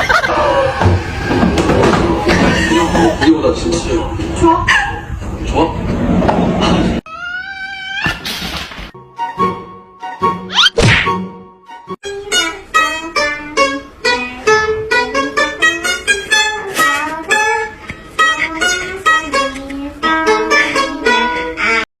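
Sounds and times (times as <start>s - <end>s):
plucked string instrument melody: 11.7s - 21.8s.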